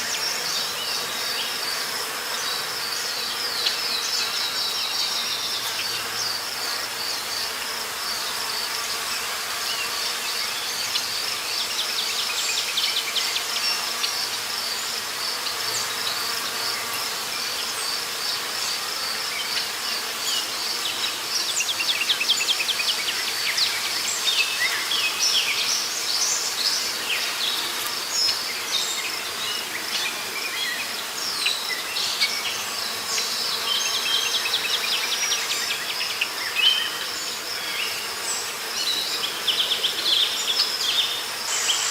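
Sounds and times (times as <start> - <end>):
insects trilling: 0.0 - 41.9.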